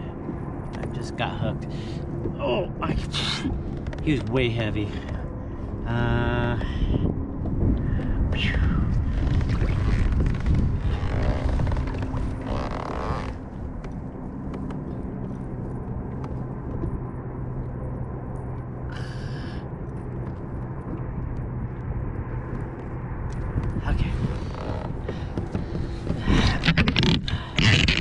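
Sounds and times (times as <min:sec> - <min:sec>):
wind rumbling on microphone: 0:00.0 - 0:28.0
microphone handling noise: 0:06.4 - 0:13.5, 0:23.4 - 0:28.0.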